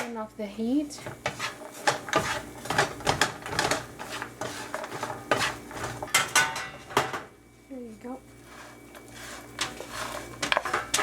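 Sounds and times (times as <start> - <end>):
almonds clattering in a pan: 8.5 - 11.0.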